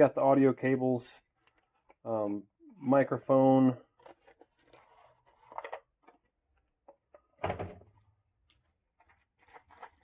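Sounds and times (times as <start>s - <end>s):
rustling packaging: 3.9s - 6.3s, 8.5s - 10.0s.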